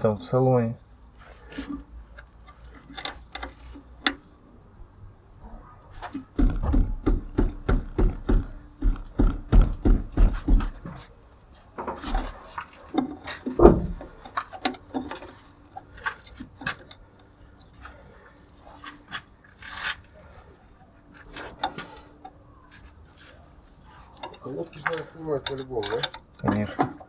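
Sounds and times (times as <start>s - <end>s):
loud knock: 6.4s - 10.8s, 13.6s - 14.1s
hand tools clinking on metal: 24.1s - 27.0s.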